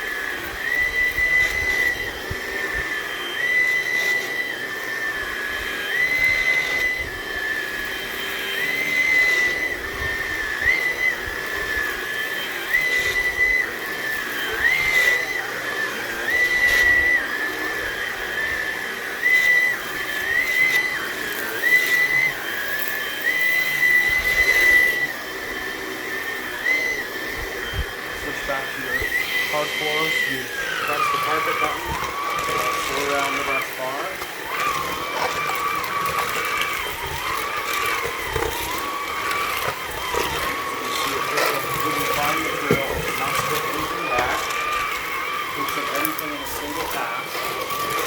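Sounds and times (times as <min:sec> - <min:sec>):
stick vacuum motor whine: 0:00.0 - 0:48.0.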